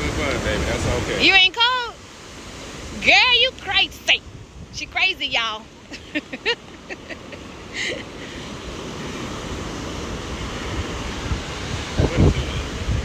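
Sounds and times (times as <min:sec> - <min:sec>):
wind on microphone: 0:00.0 - 0:01.4, 0:02.2 - 0:05.5, 0:08.4 - 0:13.0
ocean surf washing onto beach: 0:00.0 - 0:13.0.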